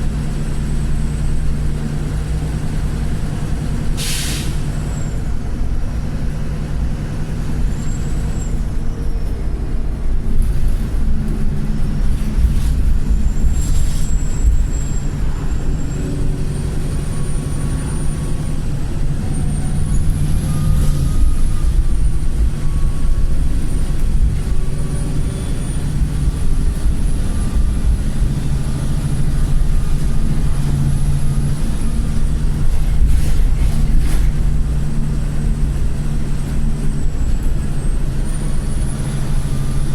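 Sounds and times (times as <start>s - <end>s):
bus diesel engine running: 0.0s - 39.9s
high-pitched turbocharger whistle: 19.2s - 24.0s.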